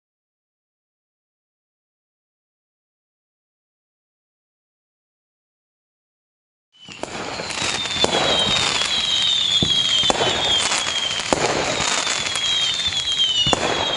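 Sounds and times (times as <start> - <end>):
firework bangs: 6.8 - 13.9
firework crackling: 6.8 - 13.9
firework whistles sliding down: 6.8 - 13.9.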